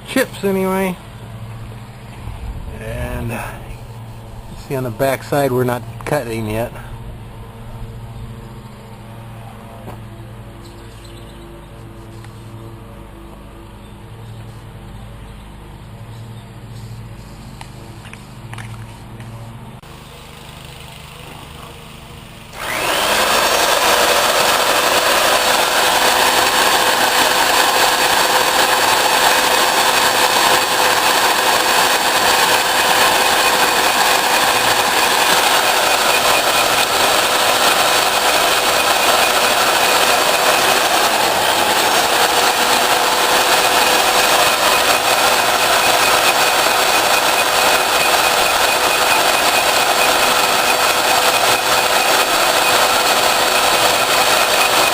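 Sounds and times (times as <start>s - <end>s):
electric drill motor running: 19.8s - 54.9s.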